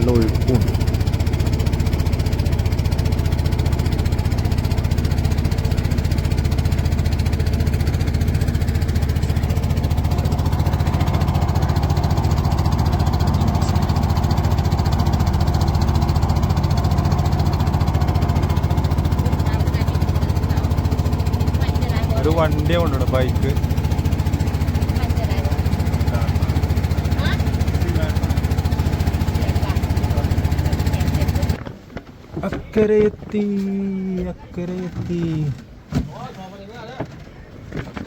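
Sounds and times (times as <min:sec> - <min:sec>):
boat engine running: 0:00.0 - 0:38.0.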